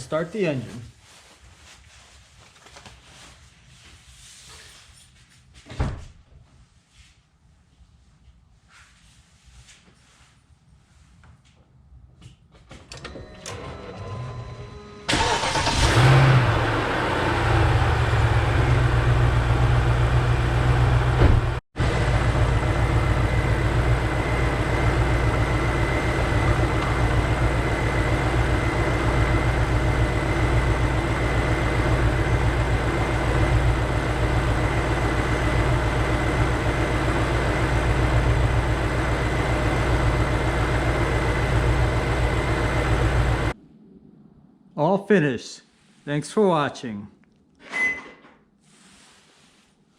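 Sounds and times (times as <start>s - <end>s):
car engine starting and idling: 12.9s - 43.6s.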